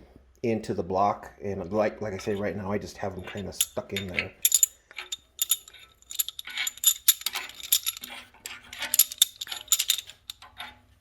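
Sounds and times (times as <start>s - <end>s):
light metallic clinks: 3.2s - 10.7s.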